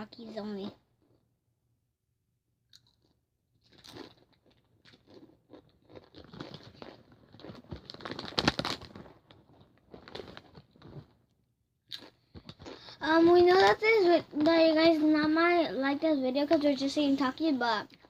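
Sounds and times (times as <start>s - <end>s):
snack bag crinkling: 2.8s - 11.2s, 11.9s - 13.8s
chips being crunched: 3.7s - 9.2s.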